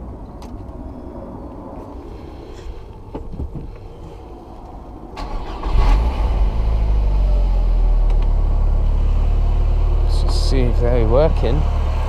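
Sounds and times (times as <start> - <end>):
car engine starting and idling: 2.8 - 12.0.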